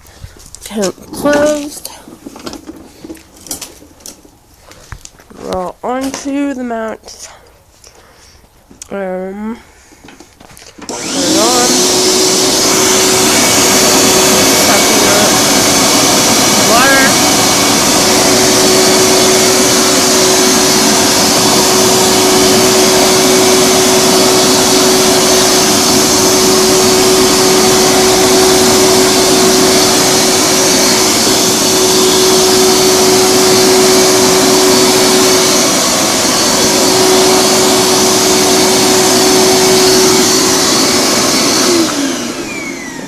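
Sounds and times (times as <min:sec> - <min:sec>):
carpet shampooer whirring hum: 0:10.8 - 0:43.0.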